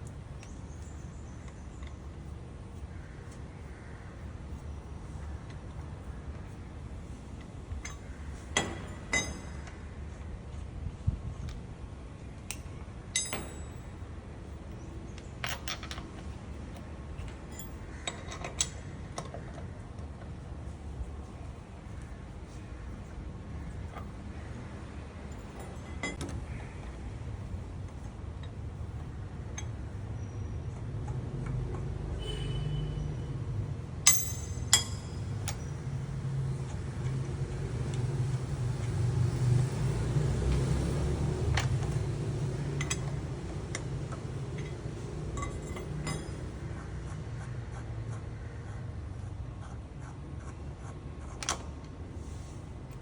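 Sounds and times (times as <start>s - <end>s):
metallic clicks of wheel nuts: 15.2s - 19.7s, 34.0s - 46.7s.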